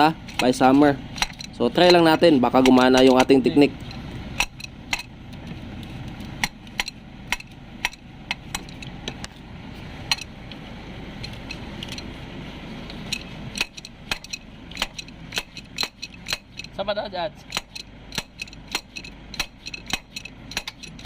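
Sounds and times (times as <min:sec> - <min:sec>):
wrench tapping metal: 0:00.0 - 0:05.5, 0:06.1 - 0:09.4, 0:10.1 - 0:10.3, 0:12.9 - 0:21.0.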